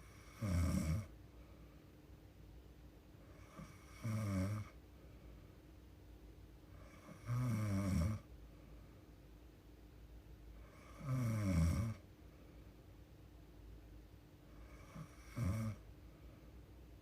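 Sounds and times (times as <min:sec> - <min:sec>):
woman snoring: 0:00.0 - 0:01.1, 0:03.4 - 0:04.8, 0:06.8 - 0:08.3, 0:10.6 - 0:12.0, 0:14.6 - 0:15.8.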